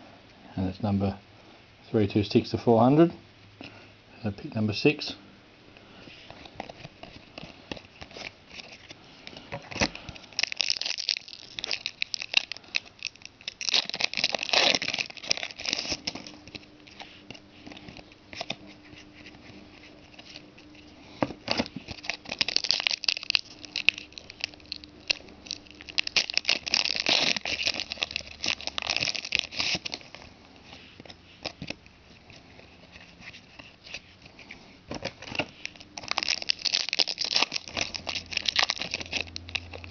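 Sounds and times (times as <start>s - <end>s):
cards being handled: 6.1s - 39.9s
wrappers tearing and crinkling: 6.4s - 30.4s, 34.9s - 39.9s.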